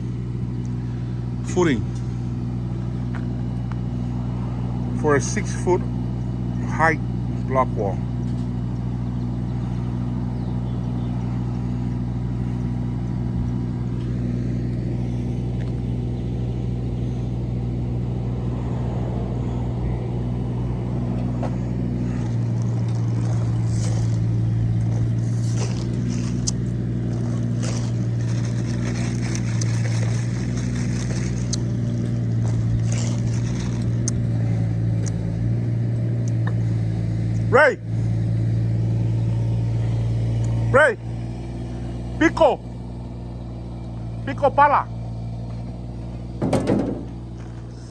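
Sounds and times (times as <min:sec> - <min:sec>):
engine running: 0:00.0 - 0:47.9
knocks and scrapes of work: 0:46.3 - 0:47.9.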